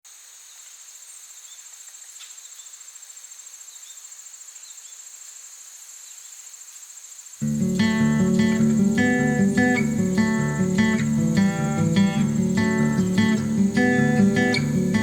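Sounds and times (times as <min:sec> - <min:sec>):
crickets trilling: 0:00.1 - 0:15.0.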